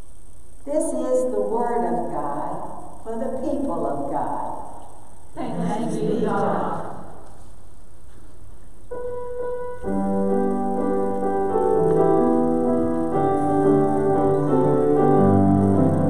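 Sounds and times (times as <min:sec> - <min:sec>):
church keyboard playing chords: 0:08.9 - 0:16.0.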